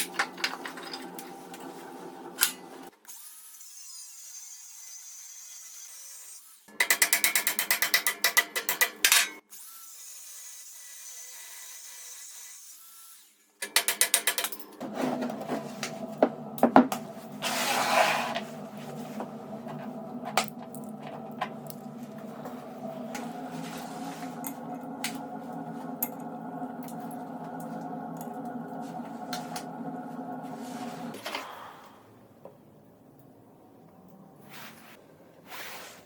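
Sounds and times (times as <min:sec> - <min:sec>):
power tool motor running: 0:14.8 - 0:31.2
hissing grinding burst: 0:15.9 - 0:31.2.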